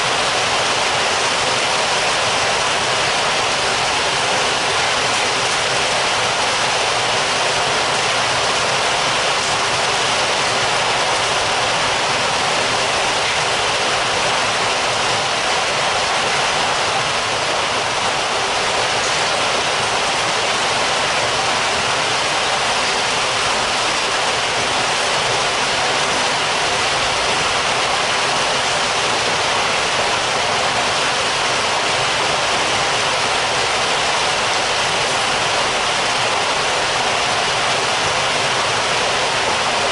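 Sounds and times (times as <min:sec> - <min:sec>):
heavy rain heard from indoors: 0:00.0 - 0:39.9.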